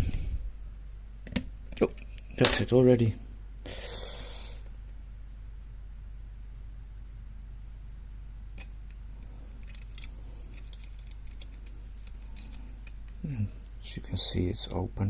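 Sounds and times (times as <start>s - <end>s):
steady low hum: 0.0s - 15.0s
small metallic clicks and rattles: 9.6s - 13.2s.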